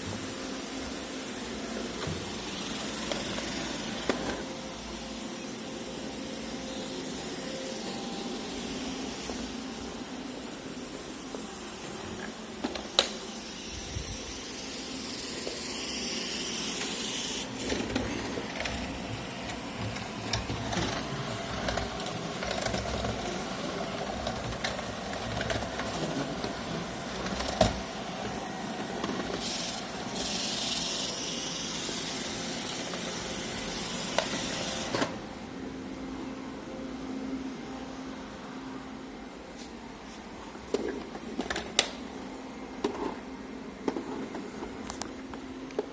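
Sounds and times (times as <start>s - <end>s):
robot vacuum running: 0.0s - 36.1s.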